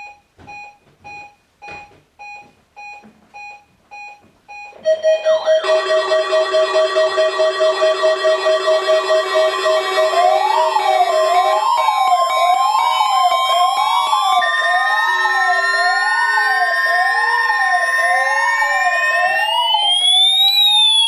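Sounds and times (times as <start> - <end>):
steady alarm tones: 4.5 - 21.0
wailing electronic siren: 4.8 - 21.0
slow rising siren glides: 4.9 - 21.0.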